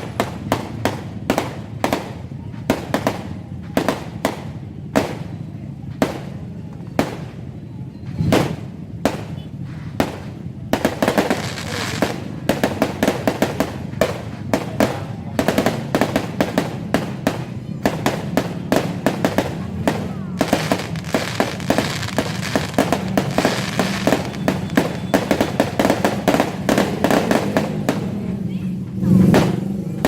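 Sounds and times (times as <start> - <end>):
fireworks bangs and crackling: 0.0 - 30.0.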